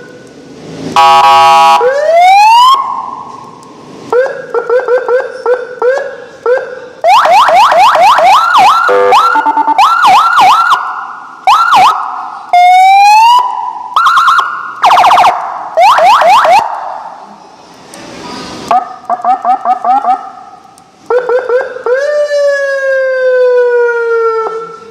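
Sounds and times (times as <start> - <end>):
electronic siren cycling tones: 4.1 - 16.7.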